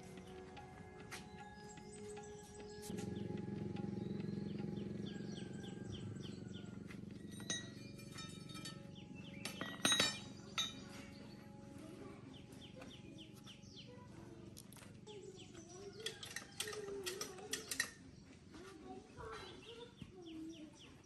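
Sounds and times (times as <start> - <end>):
low steady hum: 0.0 - 14.9
birds chirping: 0.0 - 21.0
metal clinks and taps: 7.2 - 11.1, 15.8 - 18.0.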